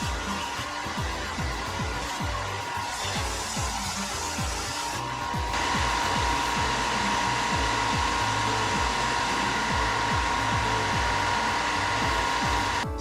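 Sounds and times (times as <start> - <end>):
power tool motor whining: 0.0 - 12.8.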